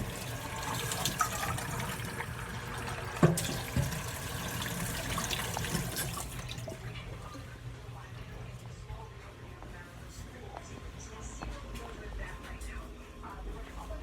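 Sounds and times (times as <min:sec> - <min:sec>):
water running from tap: 0:00.0 - 0:07.3.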